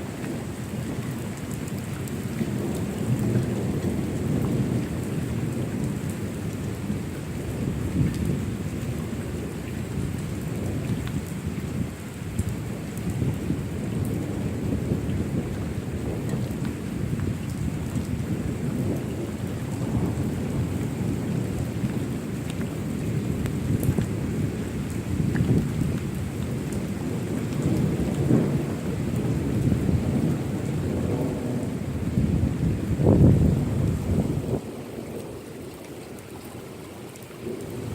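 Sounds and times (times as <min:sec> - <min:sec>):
low rumble of thunder: 0:00.0 - 0:37.9
steady rain: 0:00.0 - 0:37.9
raindrop ticks: 0:00.2 - 0:06.8, 0:08.0 - 0:08.4, 0:10.1 - 0:11.4, 0:12.3 - 0:14.3, 0:15.0 - 0:24.2, 0:24.8 - 0:31.7, 0:34.6 - 0:37.9.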